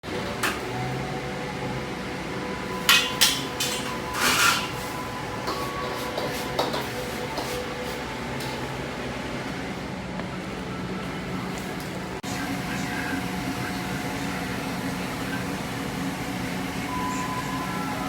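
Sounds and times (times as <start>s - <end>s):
steady background hum: 0.0s - 18.0s
dishes knocking and clicking: 2.8s - 4.8s, 5.4s - 7.6s.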